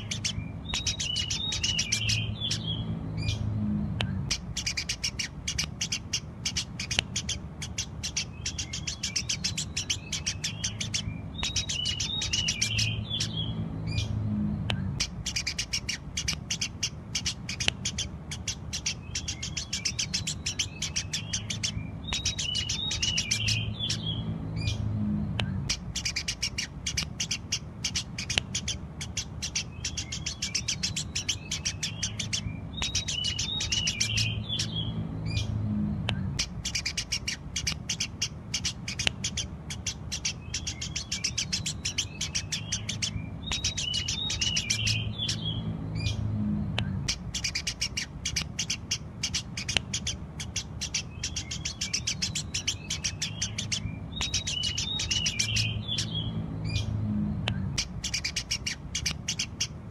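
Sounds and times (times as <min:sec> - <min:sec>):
sparrows chirping: 0:00.0 - 0:59.9
steady low hum: 0:00.0 - 0:59.9.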